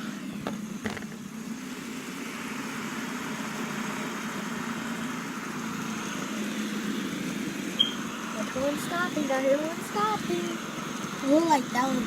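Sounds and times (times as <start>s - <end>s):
fidget spinners whirring: 7.8s - 12.0s.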